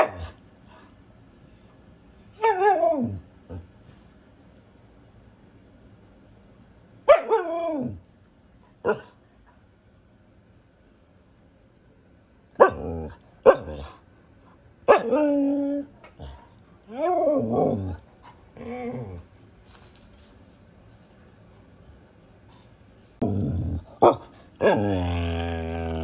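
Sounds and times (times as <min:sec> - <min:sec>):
dog barking: 0:00.0 - 0:00.4, 0:07.1 - 0:07.6, 0:08.8 - 0:09.1, 0:12.6 - 0:13.8, 0:14.9 - 0:15.2, 0:24.0 - 0:24.8
dog howling: 0:23.2 - 0:26.0.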